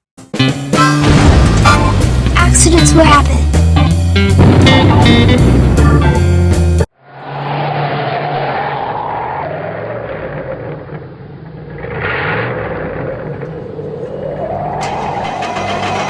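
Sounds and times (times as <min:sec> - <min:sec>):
music: 0:00.2 - 0:06.9
rattling rumble of train: 0:14.8 - 0:16.0.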